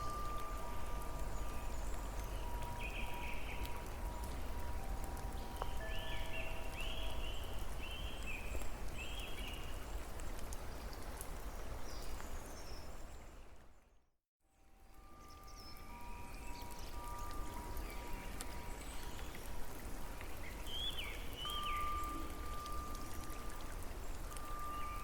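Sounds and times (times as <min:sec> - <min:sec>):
bird chirping: 0:00.0 - 0:04.4, 0:20.2 - 0:25.0
running water: 0:00.0 - 0:13.1, 0:15.0 - 0:25.0
rain pattering: 0:00.0 - 0:13.8, 0:14.7 - 0:25.0.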